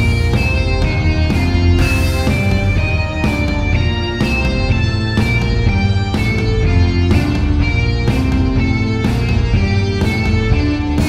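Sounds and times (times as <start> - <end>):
music with beat and guitar: 0.0 - 11.0.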